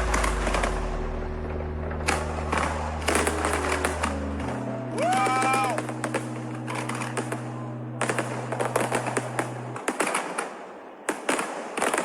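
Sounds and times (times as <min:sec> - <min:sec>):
fireworks crackling and popping: 0:08.0 - 0:12.0.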